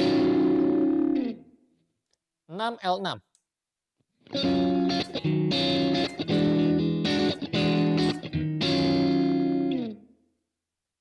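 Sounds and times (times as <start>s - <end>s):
electric guitar chords: 0.0s - 1.6s, 4.2s - 10.1s.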